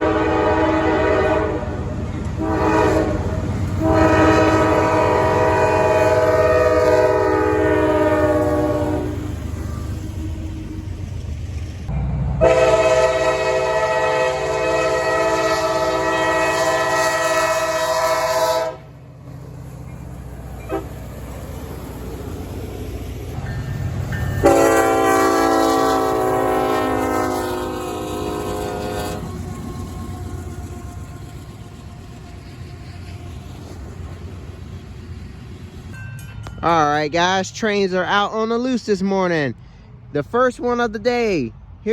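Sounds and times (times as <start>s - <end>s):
locomotive air horn blasts: 0.0s - 1.8s, 2.4s - 9.3s, 12.4s - 19.0s, 20.6s - 21.0s, 24.4s - 31.4s
train rumble: 0.0s - 41.9s.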